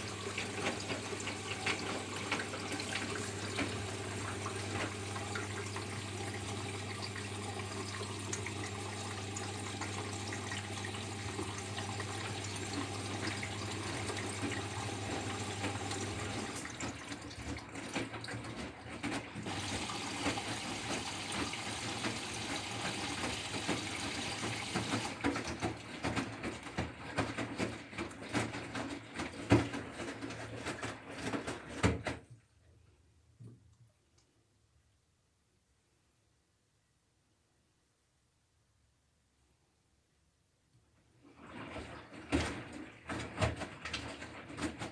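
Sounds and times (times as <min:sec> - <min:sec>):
water rushing in washing machine: 0:00.0 - 0:32.4, 0:41.1 - 0:44.9
washing machine hum: 0:00.0 - 0:33.7, 0:41.0 - 0:44.9.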